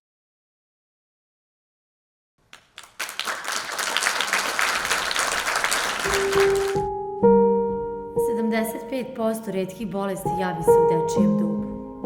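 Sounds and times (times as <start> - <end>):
audience applauding: 2.4 - 6.9.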